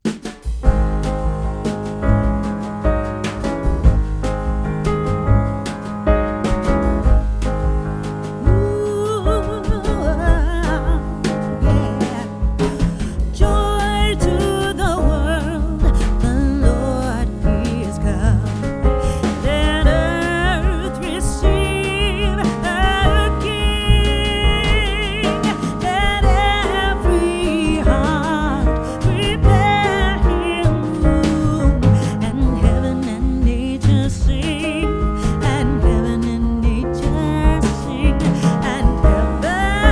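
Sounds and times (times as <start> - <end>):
song with singing and heavy bass: 8.4 - 39.9.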